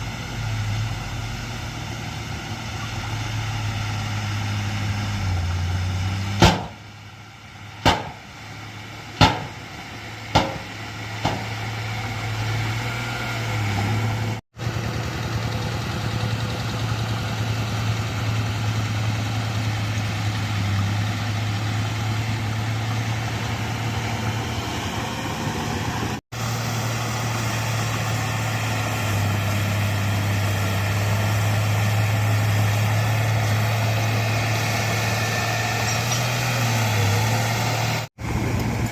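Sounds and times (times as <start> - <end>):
diesel engine running: 0.0 - 38.9
sharp knocks: 6.4 - 6.8, 7.8 - 8.2, 9.2 - 9.6, 10.3 - 11.6.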